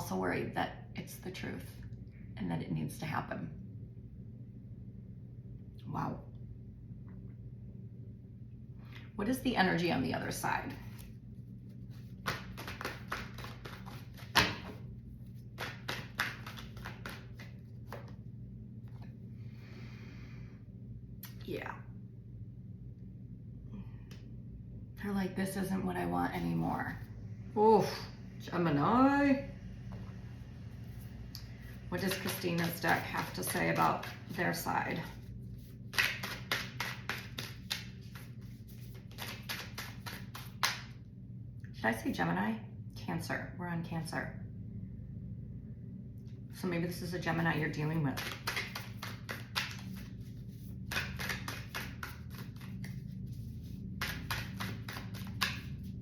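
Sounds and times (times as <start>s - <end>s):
low steady hum: 0.0s - 56.0s
cards clicking and tapping: 12.0s - 14.8s, 15.5s - 18.2s, 35.9s - 40.9s, 48.2s - 53.0s, 54.0s - 55.8s
cards sliding rustle: 48.2s - 55.7s.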